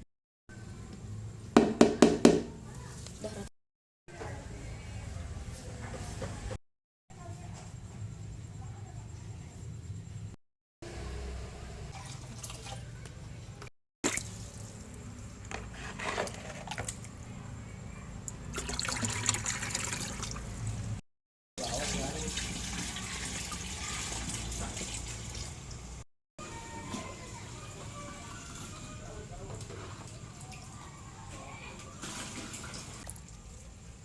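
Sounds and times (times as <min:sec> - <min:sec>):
water running and splashing: 0:21.6 - 0:25.9, 0:28.2 - 0:33.7.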